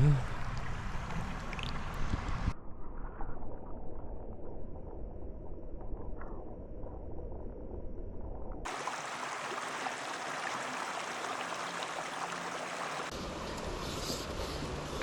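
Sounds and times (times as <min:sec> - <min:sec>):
stream water rushing: 0:08.7 - 0:13.1.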